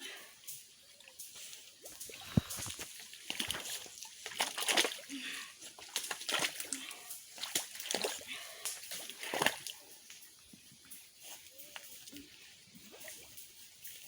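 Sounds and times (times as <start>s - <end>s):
mud and water splashing: 1.9s - 10.1s.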